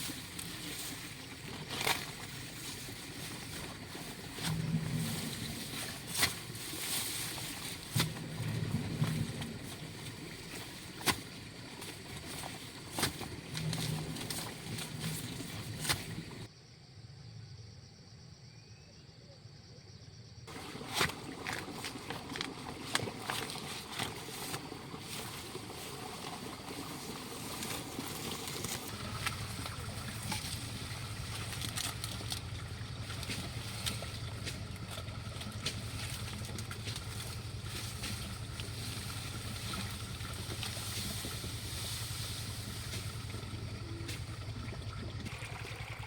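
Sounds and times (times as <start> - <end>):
low motor hum: 0.0 - 16.5, 20.5 - 46.0.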